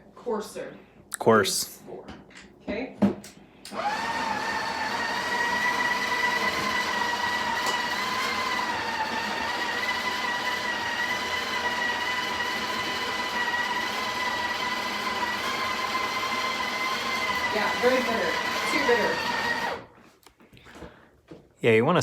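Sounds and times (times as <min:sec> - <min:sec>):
coffee grinder motor whine: 0:03.7 - 0:19.9.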